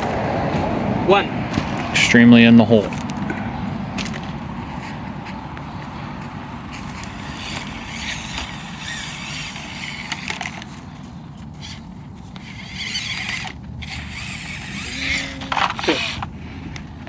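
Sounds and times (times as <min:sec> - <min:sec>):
small electric motor whirring: 0:06.7 - 0:16.4.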